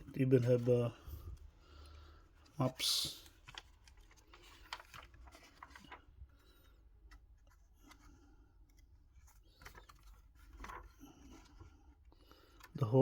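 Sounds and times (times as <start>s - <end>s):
book pages rustling: 0.0s - 13.0s.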